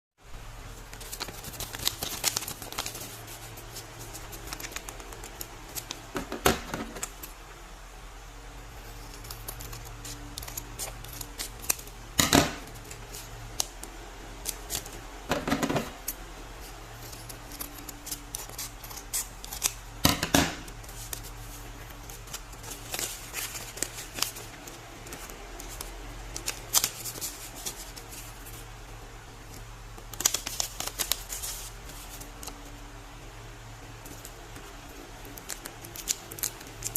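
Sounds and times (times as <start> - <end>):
steady low hum: 0.2 - 36.9
paper packaging crinkling: 0.8 - 7.3, 20.7 - 28.6, 30.0 - 32.6
sharp paper crackles: 0.9 - 6.0, 20.8 - 28.6, 30.0 - 32.6.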